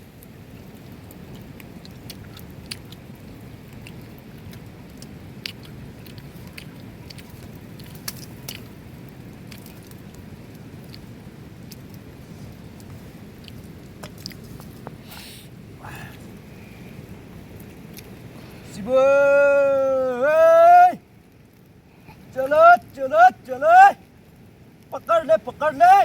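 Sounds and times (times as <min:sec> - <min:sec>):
steady low hiss: 0:00.0 - 0:26.0
crunchy chewing: 0:03.7 - 0:08.8, 0:12.8 - 0:15.4.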